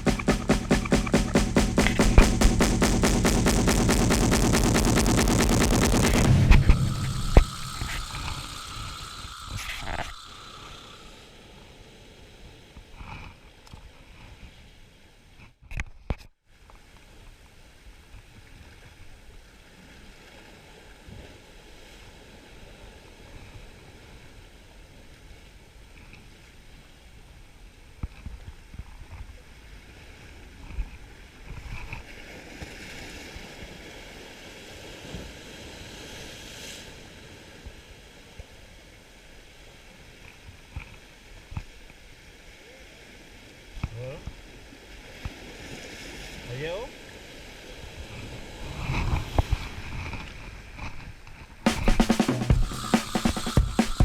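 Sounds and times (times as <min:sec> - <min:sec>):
sharp knocks: 0:00.0 - 0:10.8.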